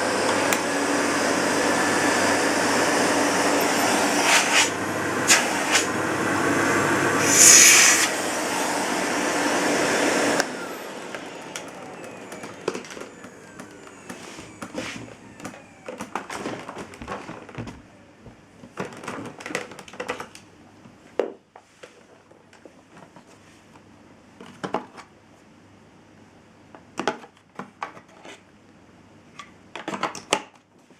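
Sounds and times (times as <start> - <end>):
vacuum cleaner running: 0.0 - 18.4
plastic parts clicking and knocking: 18.6 - 20.5, 29.4 - 30.7.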